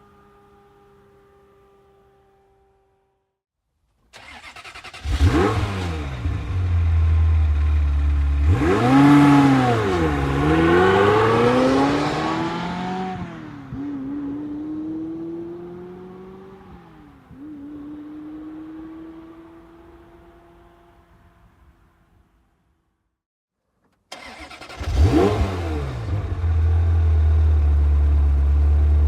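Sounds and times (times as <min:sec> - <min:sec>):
car starter cranking: 0:04.2 - 0:05.3, 0:23.9 - 0:25.2
car engine revving: 0:04.2 - 0:16.8, 0:24.1 - 0:29.0.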